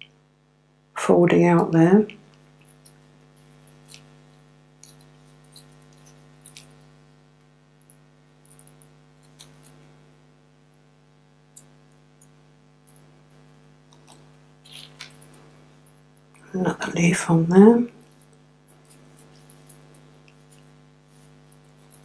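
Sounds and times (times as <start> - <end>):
steady electrical hum: 0.0 - 22.0
florist tape crinkling: 13.9 - 15.5.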